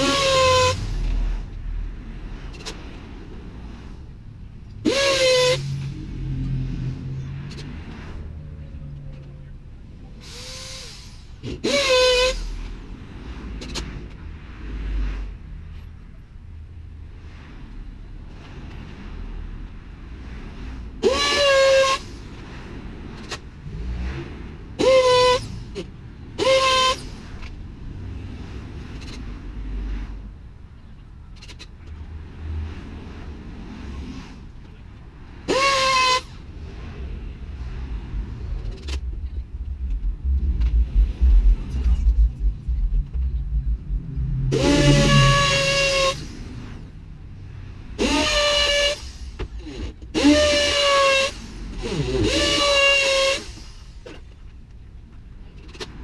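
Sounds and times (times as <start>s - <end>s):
low rumble: 5.6s - 10.4s, 36.4s - 48.0s
short pitched toot: 38.0s - 46.4s.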